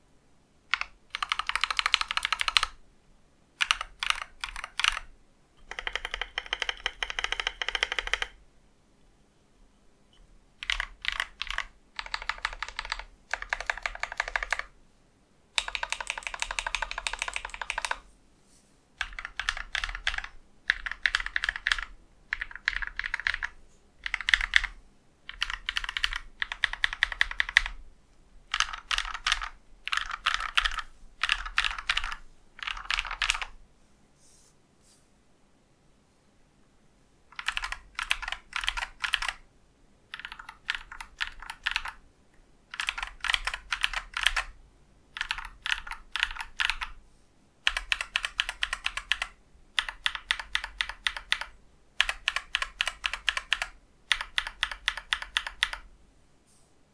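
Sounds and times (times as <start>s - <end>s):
mechanical keyboard typing: 0.7s - 2.8s, 3.6s - 8.4s, 10.6s - 14.7s, 15.6s - 18.0s, 19.0s - 27.8s, 28.5s - 33.6s, 37.3s - 39.4s, 40.1s - 42.0s, 42.7s - 47.0s, 47.6s - 55.9s.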